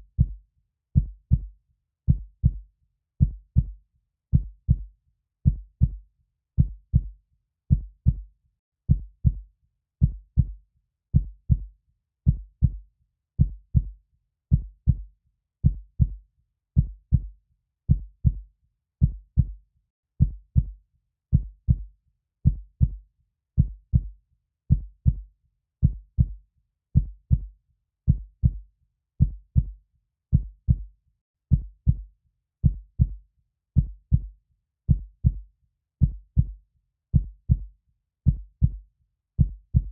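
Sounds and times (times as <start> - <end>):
slow heartbeat thumps: 5.5 - 6.0, 6.6 - 7.1, 7.7 - 8.2, 13.4 - 13.9, 15.6 - 16.2, 19.0 - 19.6, 20.2 - 20.7, 24.7 - 25.2, 27.0 - 27.5, 28.1 - 28.6, 29.2 - 30.9, 31.5 - 32.0, 32.6 - 33.2, 33.8 - 34.3, 34.9 - 35.4, 36.0 - 36.6, 37.2 - 37.7, 38.3 - 38.8, 39.4 - 39.9.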